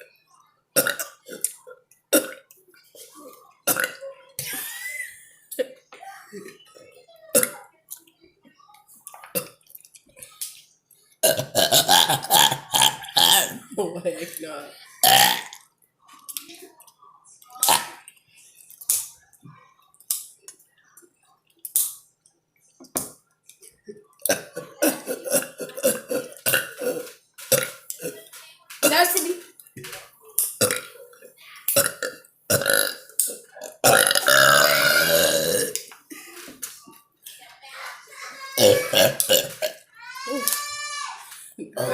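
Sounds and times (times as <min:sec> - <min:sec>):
child burping: 0:00.8 - 0:05.0, 0:07.3 - 0:07.7, 0:09.3 - 0:09.6, 0:11.2 - 0:14.4, 0:15.0 - 0:15.7, 0:17.6 - 0:18.1, 0:24.2 - 0:29.3, 0:30.4 - 0:36.5, 0:38.4 - 0:41.0, 0:41.7 - 0:41.9
long loud burp: 0:03.7 - 0:04.0, 0:11.2 - 0:13.6, 0:15.0 - 0:15.6, 0:30.6 - 0:30.9, 0:31.8 - 0:35.8, 0:38.6 - 0:39.8.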